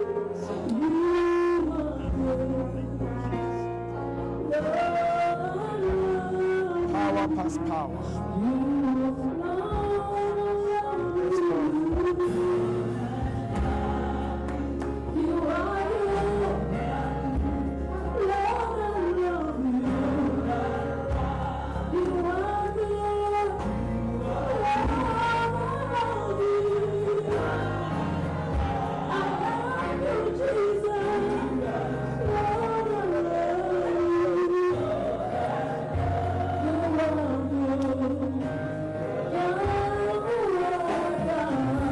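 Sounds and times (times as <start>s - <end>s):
low keyboard chords: 0.0s - 41.9s
voices singing gospel song: 0.0s - 41.9s.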